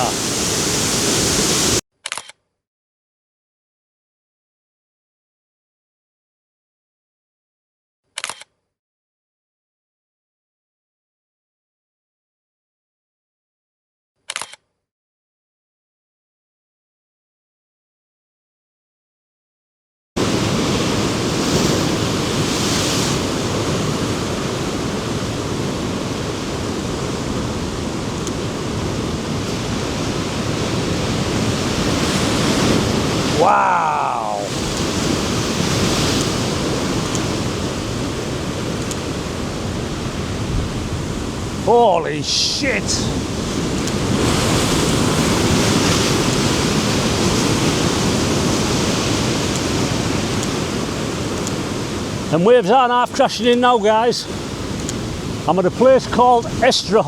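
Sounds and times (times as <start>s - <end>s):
surf breaking on rocks: 0.0s - 1.8s, 20.2s - 57.0s
wind on microphone: 34.3s - 52.3s.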